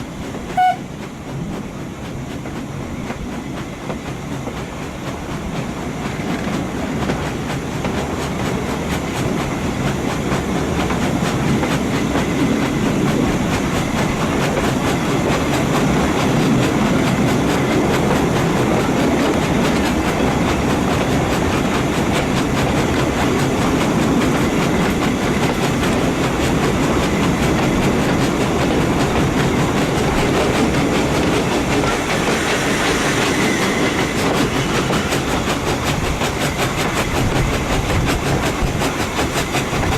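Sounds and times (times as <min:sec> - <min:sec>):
train wheels rumbling on rails: 0:00.0 - 0:39.9.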